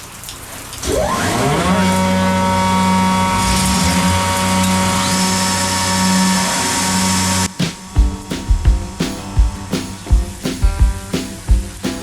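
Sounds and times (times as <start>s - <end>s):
planer motors whining: 1.1s - 7.5s
higher whine: 1.2s - 9.7s.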